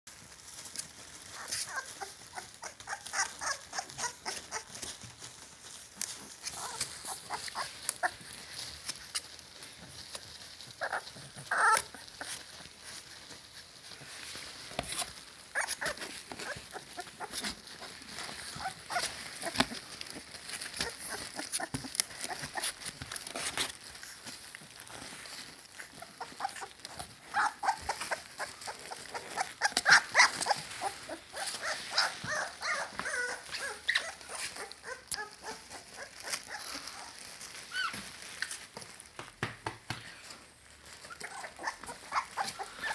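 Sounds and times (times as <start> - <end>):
puppies whining and squeaking: 0.2 - 39.0, 40.5 - 42.9
puppy yelp: 1.2 - 5.4, 6.2 - 8.7, 10.6 - 12.6, 14.9 - 24.1, 25.7 - 38.2, 40.9 - 42.9.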